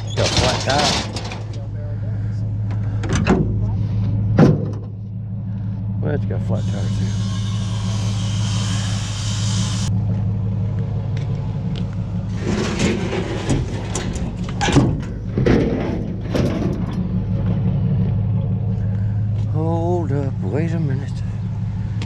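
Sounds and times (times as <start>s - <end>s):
scrap metal clattering: 0.0s - 1.7s, 12.2s - 17.7s
vehicle engine idling: 0.0s - 22.0s
hiss: 7.0s - 9.9s.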